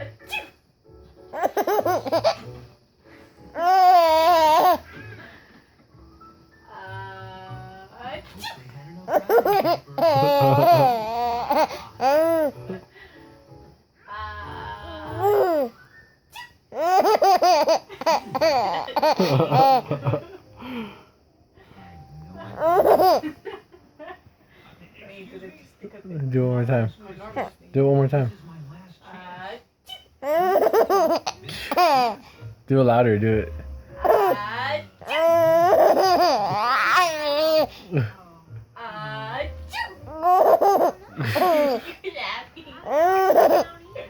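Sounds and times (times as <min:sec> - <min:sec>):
baby laughing: 0:01.3 - 0:02.5, 0:03.5 - 0:05.2, 0:09.1 - 0:12.7, 0:15.2 - 0:15.7, 0:16.4 - 0:20.2, 0:22.5 - 0:23.3, 0:29.9 - 0:32.2, 0:34.0 - 0:34.4, 0:35.0 - 0:37.8, 0:40.1 - 0:41.8, 0:42.8 - 0:43.7.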